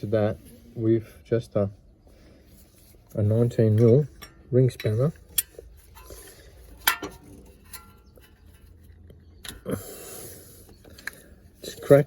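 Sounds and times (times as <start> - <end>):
metal spanner clinking: 6.8 - 8.2.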